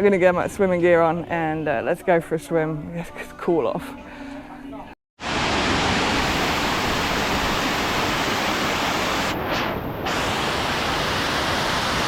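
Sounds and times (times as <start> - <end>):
waterfall roaring: 5.2 - 12.0.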